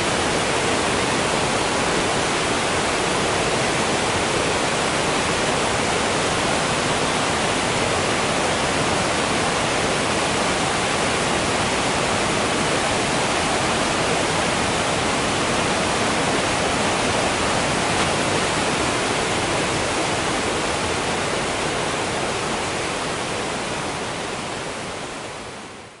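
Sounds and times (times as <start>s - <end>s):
waterfall rushing: 0.0s - 26.0s.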